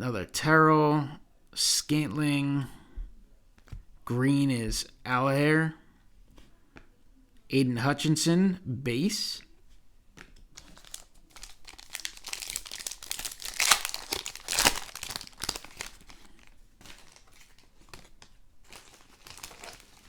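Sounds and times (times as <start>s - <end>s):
foil wrapper crinkling: 10.5s - 20.0s
foil ripping: 10.6s - 20.0s.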